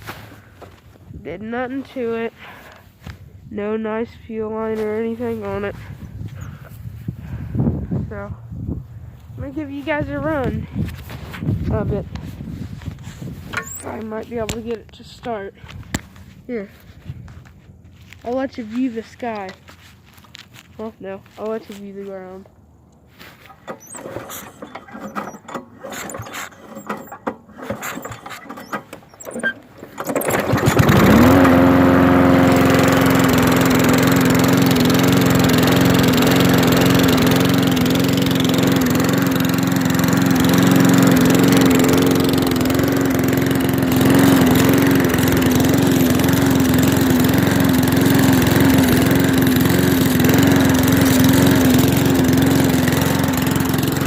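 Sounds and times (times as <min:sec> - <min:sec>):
lawnmower engine running: 0:04.8 - 0:17.0, 0:17.6 - 0:54.0.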